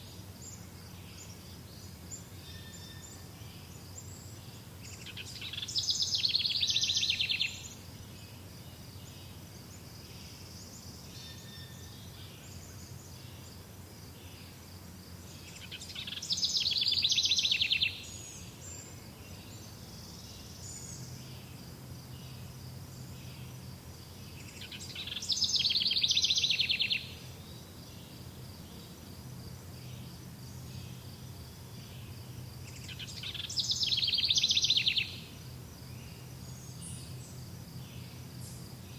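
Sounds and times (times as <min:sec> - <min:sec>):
faint outdoor background: 0:00.0 - 0:38.9
songbird trilling: 0:04.8 - 0:07.8, 0:15.5 - 0:18.2, 0:24.4 - 0:27.3, 0:32.7 - 0:35.3.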